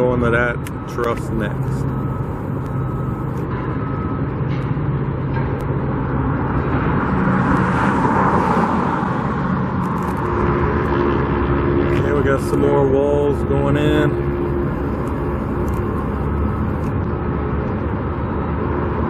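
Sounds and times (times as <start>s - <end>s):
road traffic hum: 0.0s - 19.0s
vehicle passing by: 6.6s - 16.9s.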